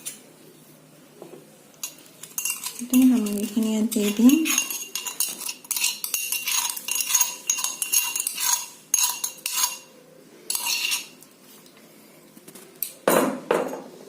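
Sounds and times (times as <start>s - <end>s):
utensil clatter: 1.8s - 9.9s
metal utensils clinking and scraping: 1.8s - 11.2s.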